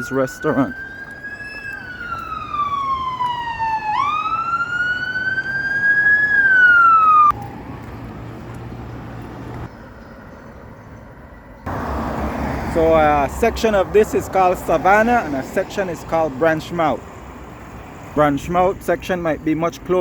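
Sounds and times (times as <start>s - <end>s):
emergency siren wailing: 0.0s - 8.3s.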